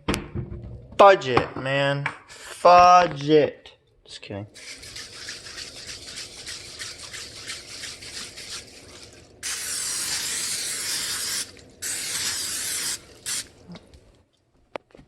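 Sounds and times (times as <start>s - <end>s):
quick rhythmic rustling: 4.6s - 9.2s
cooking spray hissing onto skillet: 4.6s - 13.7s.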